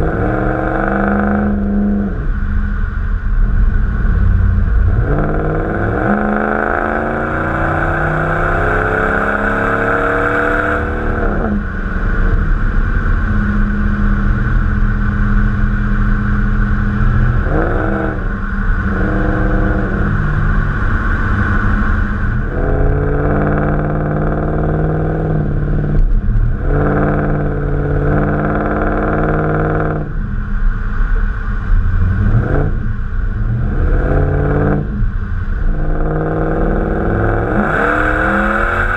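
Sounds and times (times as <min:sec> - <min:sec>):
pickup truck engine revving: 0:03.8 - 0:14.9, 0:16.6 - 0:30.2.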